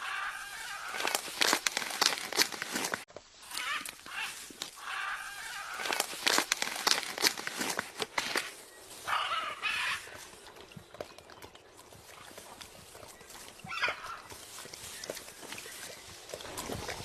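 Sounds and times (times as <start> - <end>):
parrot harsh calls: 3.6 - 5.8.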